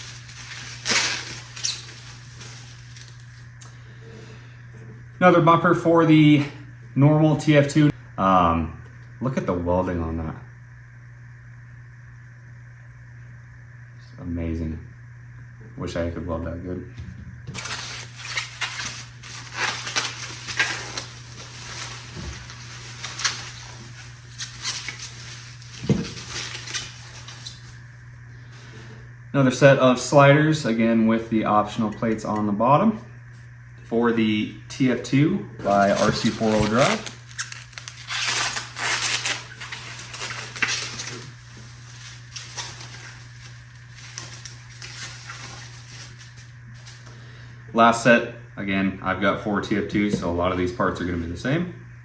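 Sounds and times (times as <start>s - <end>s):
packaging rustling: 0.0s - 3.6s, 17.5s - 27.8s, 35.6s - 47.1s
steady low hum: 0.0s - 52.0s.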